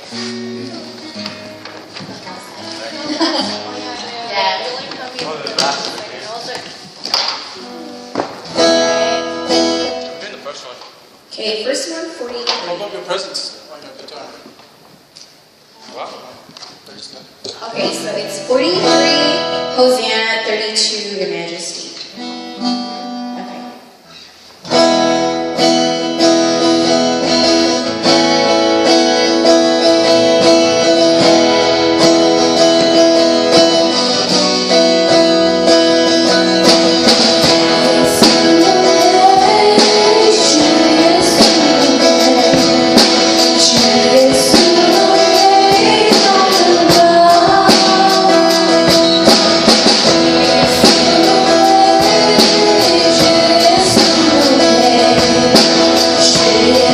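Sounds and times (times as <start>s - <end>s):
strummed acoustic guitar: 0.0s - 6.2s, 7.5s - 10.4s, 17.6s - 20.9s, 22.0s - 56.9s
worship band playing: 0.0s - 10.8s, 17.6s - 56.9s
people singing: 36.1s - 56.9s.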